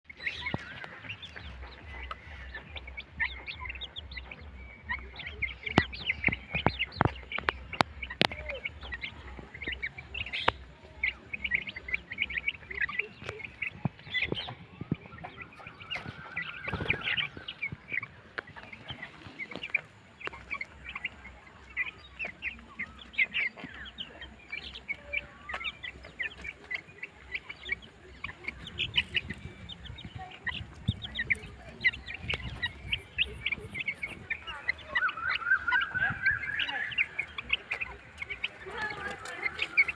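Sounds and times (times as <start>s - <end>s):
chicks peeping: 0.0s - 39.9s.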